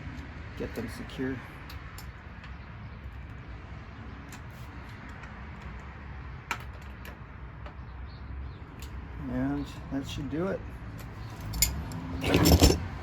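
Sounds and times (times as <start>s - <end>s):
pliers clicking on metal: 11.4s - 12.8s.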